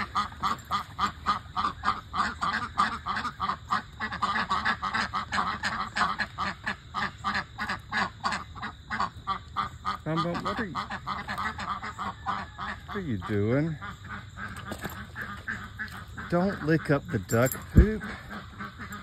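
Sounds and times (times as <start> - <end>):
ducks quacking: 0.0 - 19.0.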